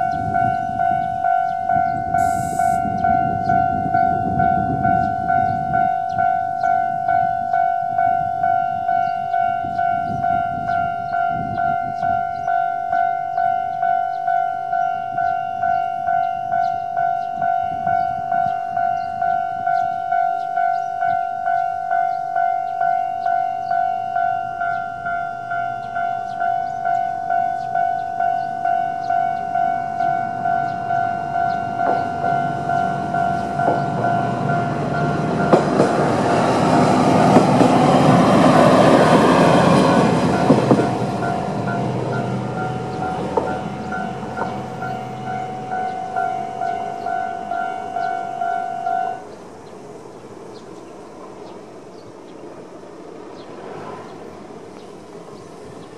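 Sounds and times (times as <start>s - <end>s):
rail joint clacks: 0.0s - 49.4s
level crossing warning bell: 0.0s - 50.1s
diesel railcar passing: 0.0s - 55.9s.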